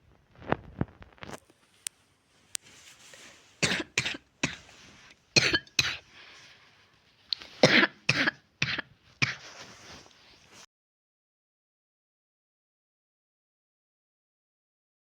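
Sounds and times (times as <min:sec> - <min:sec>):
soft breaths: 0:01.6 - 0:03.6, 0:04.2 - 0:07.6, 0:09.0 - 0:10.7
person coughing: 0:03.6 - 0:04.8, 0:05.4 - 0:06.1, 0:07.6 - 0:09.6.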